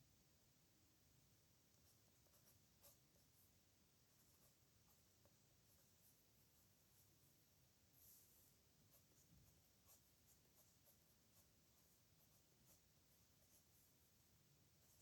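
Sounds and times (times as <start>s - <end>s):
pen scratching on paper: 2.2s - 3.4s, 8.0s - 15.0s.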